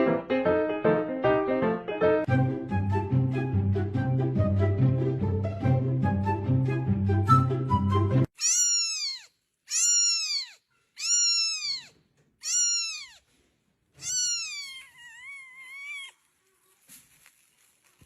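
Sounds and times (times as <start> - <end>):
cat meowing: 8.4 - 13.3, 14.0 - 16.3.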